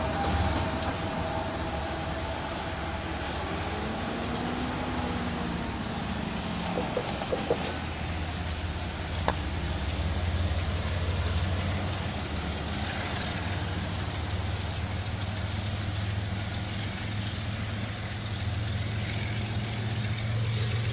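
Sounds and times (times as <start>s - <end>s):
engine idling: 0.0s - 20.9s
rain hissing: 0.9s - 14.8s.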